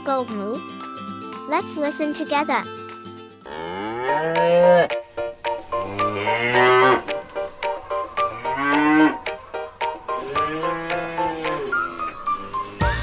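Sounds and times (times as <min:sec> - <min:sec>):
cows mooing: 0:03.5 - 0:05.0, 0:05.8 - 0:07.3, 0:08.2 - 0:09.5, 0:10.2 - 0:11.7.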